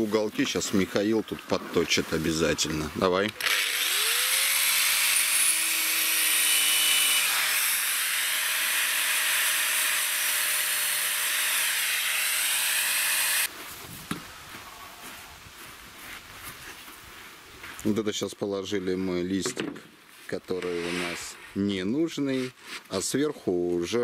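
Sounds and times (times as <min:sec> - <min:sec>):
angle grinder cutting board: 0:03.4 - 0:13.5, 0:20.6 - 0:21.4.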